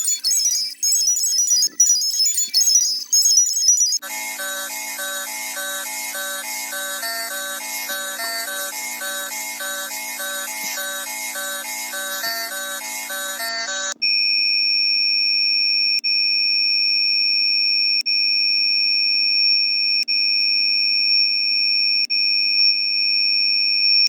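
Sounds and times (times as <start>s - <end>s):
high-pitched electronic alarm tone: 0.0s - 14.0s.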